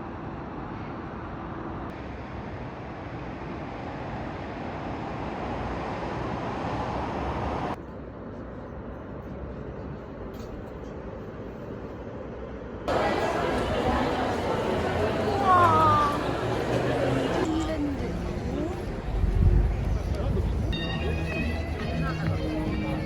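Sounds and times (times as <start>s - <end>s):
moving vehicle rumbling: 12.9s - 23.0s.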